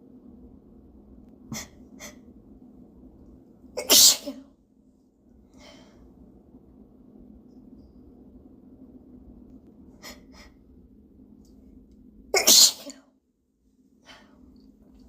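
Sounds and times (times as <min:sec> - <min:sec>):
person sneezing: 0:03.8 - 0:04.4, 0:12.4 - 0:13.0.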